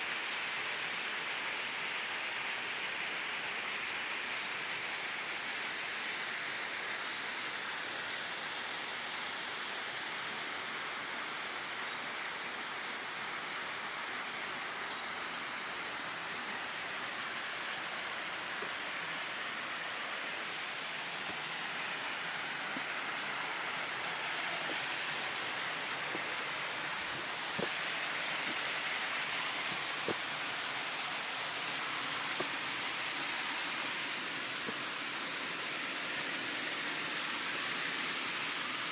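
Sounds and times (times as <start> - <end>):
waterfall rushing: 13.6 - 38.9.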